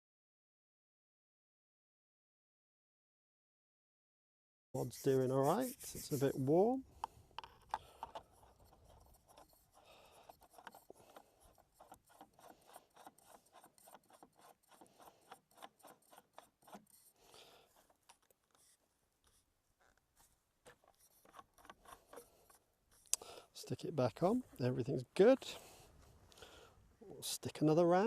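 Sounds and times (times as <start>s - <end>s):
cleaning rod rubbing in barrel: 4.8s - 6.8s, 7.4s - 23.1s.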